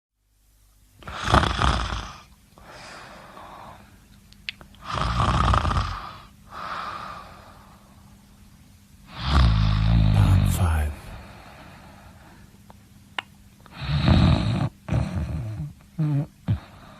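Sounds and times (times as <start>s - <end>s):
soft breath: 2.6s - 4.0s
person snoring: 9.1s - 11.5s.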